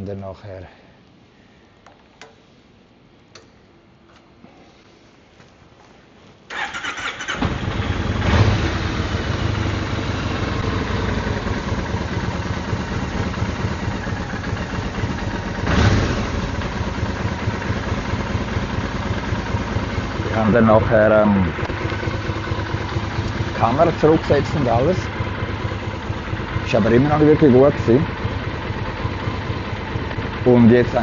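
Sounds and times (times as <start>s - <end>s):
engine starter cranking: 6.5s - 8.6s
motorcycle engine idling and revving: 6.5s - 31.0s.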